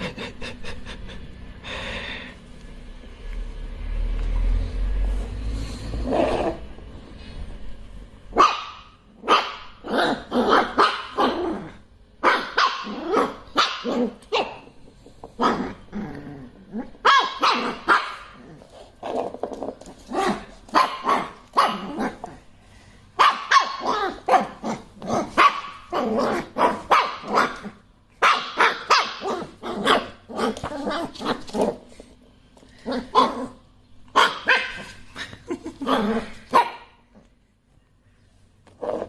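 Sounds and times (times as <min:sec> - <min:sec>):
dog barking: 0:08.4 - 0:11.3, 0:12.2 - 0:14.6, 0:17.0 - 0:18.4, 0:20.8 - 0:21.8, 0:23.2 - 0:24.6, 0:25.4 - 0:25.8, 0:26.6 - 0:27.6, 0:28.2 - 0:30.2, 0:34.1 - 0:34.9, 0:36.5 - 0:37.0.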